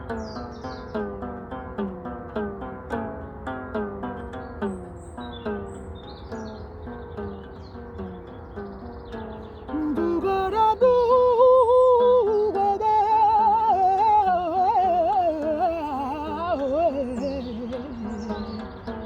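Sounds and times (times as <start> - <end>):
instrumental accompaniment: 0.0 - 19.0
person singing wordless melody: 9.5 - 19.0.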